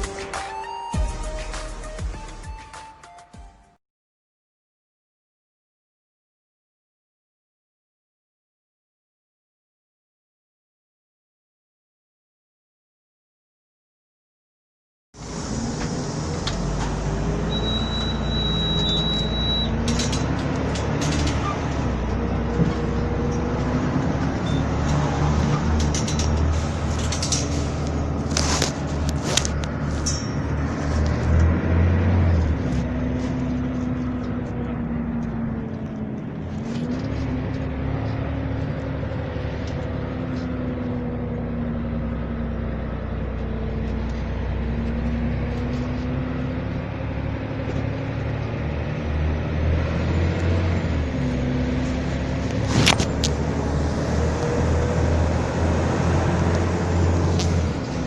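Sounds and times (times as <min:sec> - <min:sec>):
diesel bus engine running: 0:15.2 - 0:58.0
sharp clicks and rattles: 0:19.8 - 0:21.4, 0:25.8 - 0:31.2.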